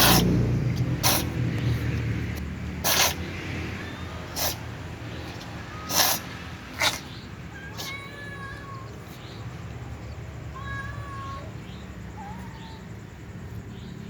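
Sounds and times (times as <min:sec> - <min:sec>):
cat sneezing: 0:00.0 - 0:01.4, 0:02.8 - 0:08.1.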